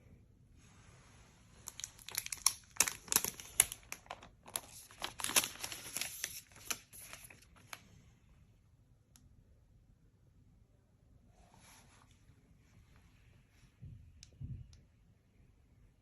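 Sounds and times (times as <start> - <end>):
plastic packaging crinkling: 1.6 - 7.8.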